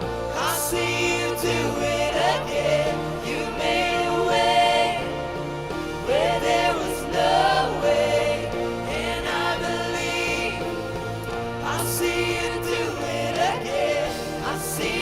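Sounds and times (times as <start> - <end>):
band accompaniment with bass: 0.0 - 15.0
singers carrying a melody: 0.0 - 15.0.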